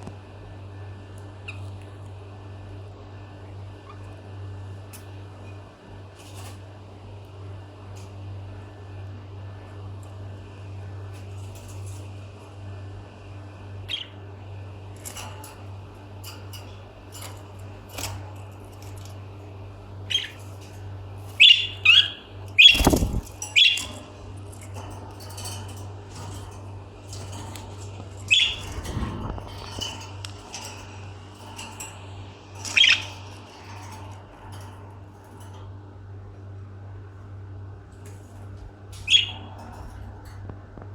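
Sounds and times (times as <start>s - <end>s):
steady low hum: 0.0s - 40.9s
lovebirds chirping: 18.8s - 24.8s, 27.2s - 31.1s, 32.2s - 33.6s, 39.0s - 39.6s.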